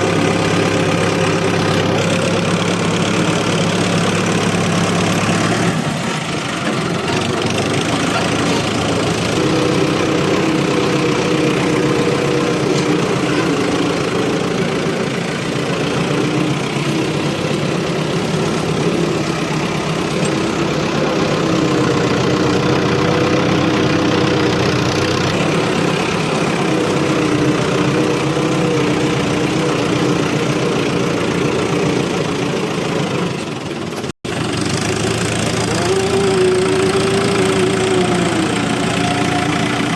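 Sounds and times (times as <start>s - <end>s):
excavator diesel engine running: 0.0s - 39.9s
wavering hum: 35.5s - 39.9s.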